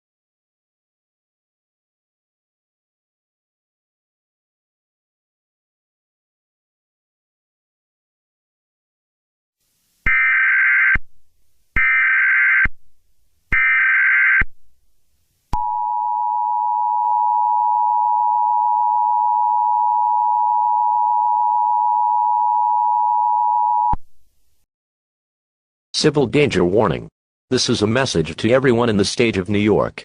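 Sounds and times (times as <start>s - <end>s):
steady two-tone beep: 15.6s - 24.0s.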